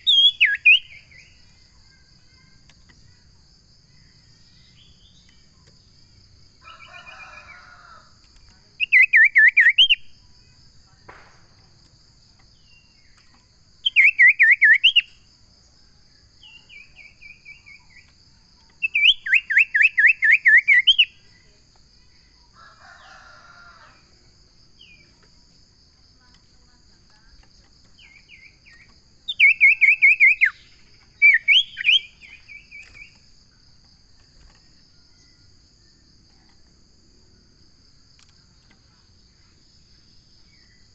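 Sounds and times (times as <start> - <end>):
bird singing whistled notes: 0.0 - 1.4, 8.8 - 10.1, 13.8 - 15.2, 18.8 - 21.2, 28.0 - 33.3.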